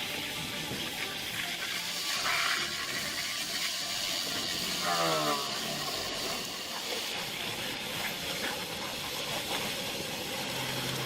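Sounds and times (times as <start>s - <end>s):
heavy machinery rushing hiss: 1.3s - 7.6s.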